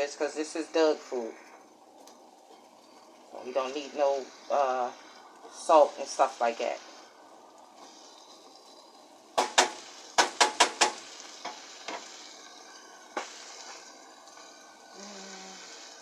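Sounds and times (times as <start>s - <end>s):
food cooking hiss: 0.0s - 16.0s
utensil knocking against pot: 9.4s - 12.0s.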